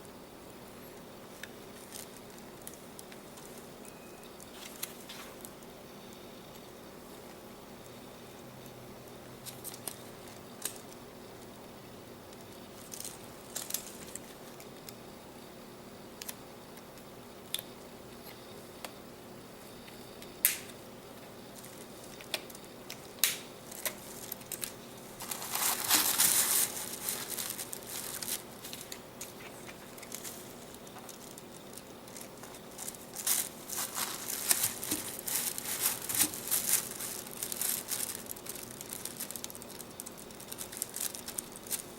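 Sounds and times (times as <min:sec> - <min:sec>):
packaging crinkling: 0:21.6 - 0:41.9.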